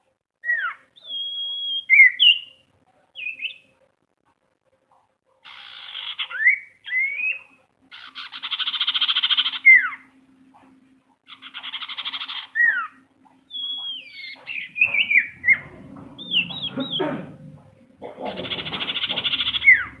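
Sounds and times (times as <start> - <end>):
bird buzzing chatters: 18.2 - 20.0.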